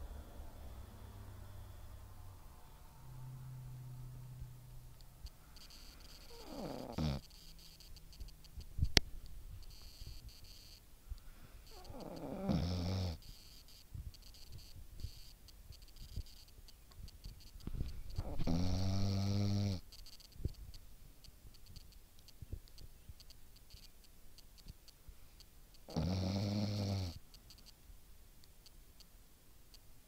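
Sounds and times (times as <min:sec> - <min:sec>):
puppy snoring: 0:03.0 - 0:08.3, 0:11.6 - 0:15.4, 0:18.1 - 0:19.9, 0:25.9 - 0:27.2.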